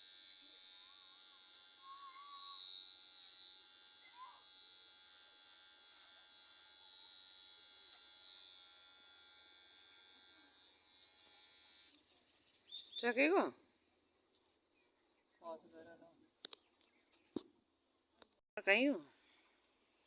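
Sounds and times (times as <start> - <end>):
electric hair clipper buzzing: 0.0 - 12.1.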